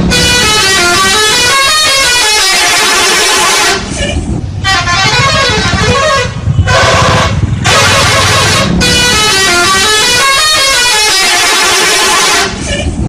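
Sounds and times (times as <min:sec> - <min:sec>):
musical bus horn melody: 0:00.0 - 0:13.0
low rumble: 0:03.7 - 0:10.0.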